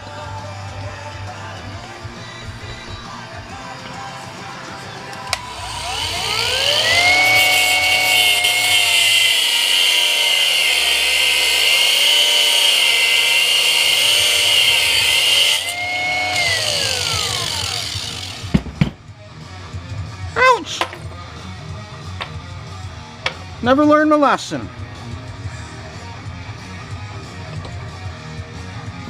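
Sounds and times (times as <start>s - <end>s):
electric grinder grinding metal: 5.1s - 18.6s.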